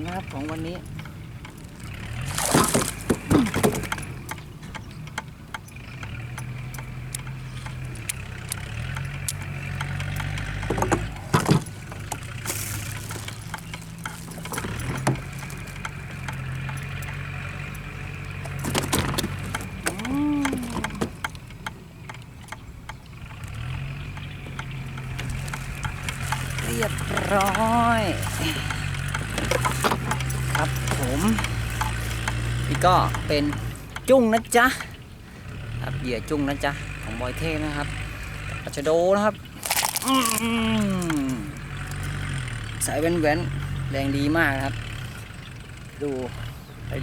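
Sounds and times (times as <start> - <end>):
small boat engine idling: 0.0 - 47.0
sharp clatters and knocks: 0.5 - 22.6, 23.2 - 34.1.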